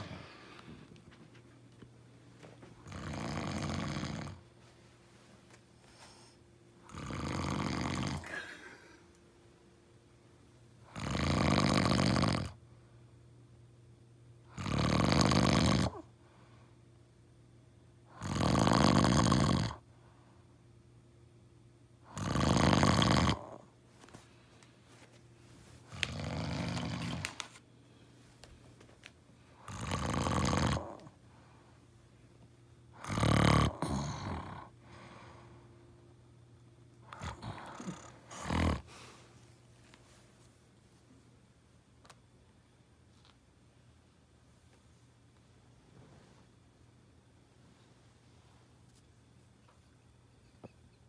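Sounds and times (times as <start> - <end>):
quiet breathing: 0.0 - 1.3, 4.3 - 6.9, 16.0 - 17.1, 19.8 - 20.8, 31.0 - 33.0, 33.7 - 36.1, 37.0 - 40.5
loud rasping snores: 2.8 - 4.4, 6.9 - 8.3, 10.9 - 12.6, 14.5 - 16.0, 18.1 - 19.8, 22.1 - 23.6, 26.0 - 27.2, 29.7 - 31.1, 33.0 - 34.7, 37.2 - 38.9.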